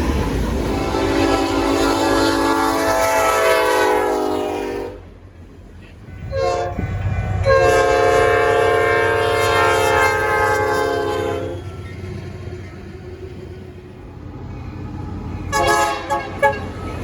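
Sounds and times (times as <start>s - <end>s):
rumble of passing train: 0.0s - 17.0s
locomotive air horn blasts: 0.6s - 5.1s, 6.2s - 11.8s, 15.5s - 16.9s.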